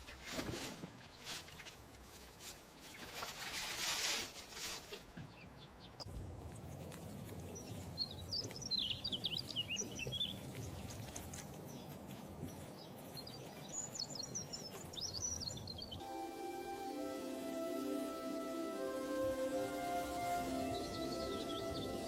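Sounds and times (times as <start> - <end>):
low background rumble: 6.1 - 11.8
bird chirping: 6.8 - 22.0.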